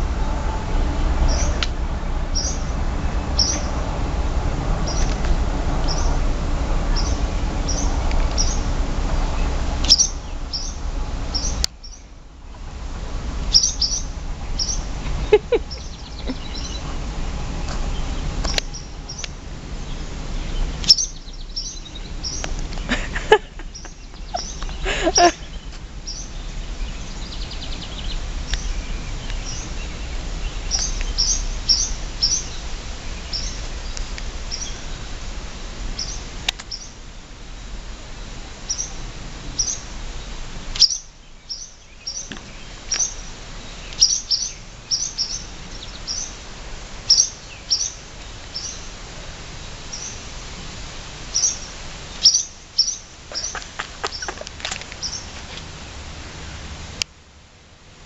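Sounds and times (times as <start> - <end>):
swallows chirping sharply: 2.4 - 2.7, 3.4 - 3.7, 4.9 - 5.1, 5.8 - 6.1, 7.0 - 8.7, 9.8 - 12.1, 13.5 - 17.0, 19.9 - 22.5, 23.6 - 32.6, 40.8 - 46.4, 47.1 - 48.0, 51.4 - 55.3.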